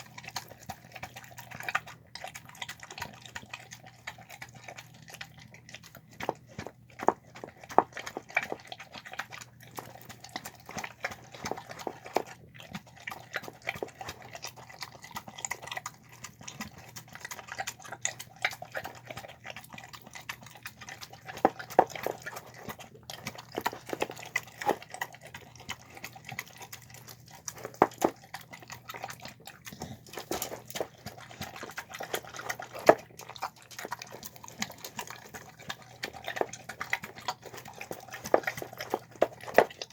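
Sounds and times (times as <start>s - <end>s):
dog chewing wet food: 0.0s - 39.9s.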